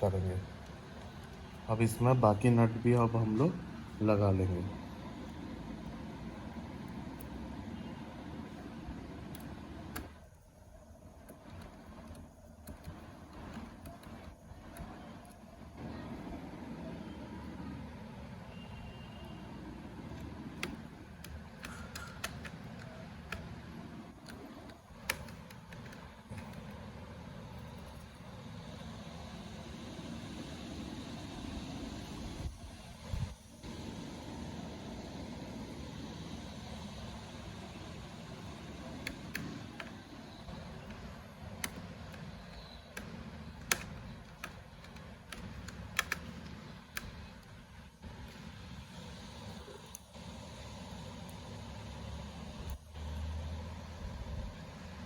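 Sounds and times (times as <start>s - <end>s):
faint low background noise: 0.0s - 55.0s
screwdriver clicking and tapping: 11.2s - 15.4s, 20.1s - 23.5s, 24.2s - 26.8s, 39.0s - 47.4s.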